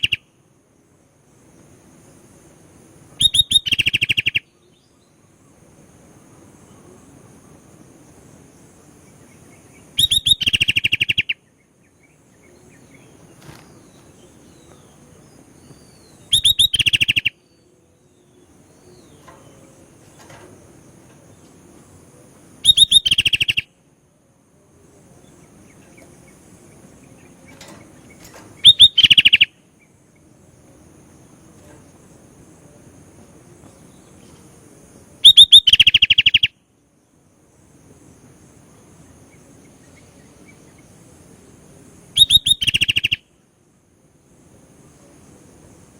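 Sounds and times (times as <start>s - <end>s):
bird chattering trills: 0.0s - 0.3s, 3.2s - 5.2s, 9.1s - 21.5s, 22.6s - 23.8s, 25.3s - 30.8s, 35.2s - 36.6s, 42.2s - 43.3s.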